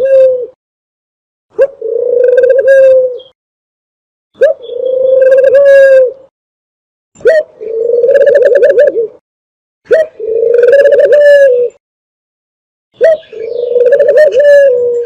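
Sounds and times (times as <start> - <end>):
dove call purring coos: 0.0 - 0.6, 1.6 - 3.4, 4.4 - 6.3, 7.2 - 9.2, 9.8 - 11.8, 13.0 - 15.0.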